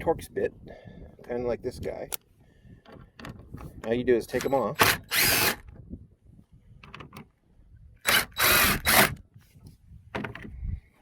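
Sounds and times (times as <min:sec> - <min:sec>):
power driver unscrewing bolts: 0:02.9 - 0:05.7.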